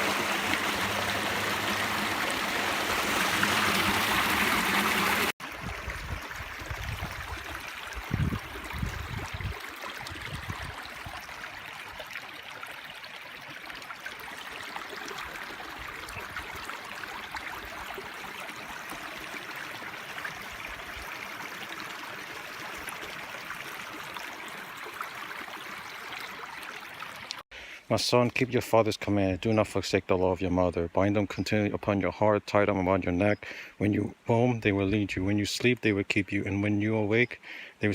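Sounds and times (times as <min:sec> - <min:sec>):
stream flowing water: 0:00.0 - 0:27.4.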